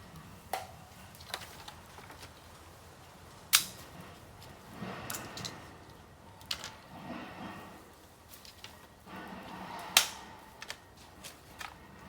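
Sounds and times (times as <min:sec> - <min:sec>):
bamboo crackling in fire: 0:00.0 - 0:12.0
bamboo bursting crack: 0:03.5 - 0:03.9, 0:09.9 - 0:10.8.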